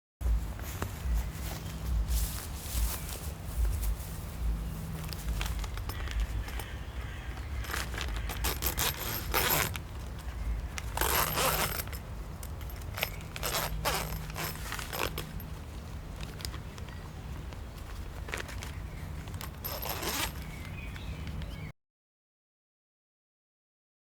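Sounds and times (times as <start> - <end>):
steady low hum: 0.2 - 20.9
zipper rasping: 2.9 - 21.4.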